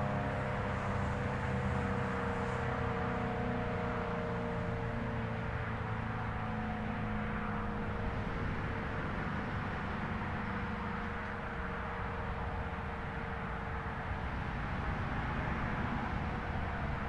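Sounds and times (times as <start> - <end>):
steady rushing noise: 6.9 - 17.0.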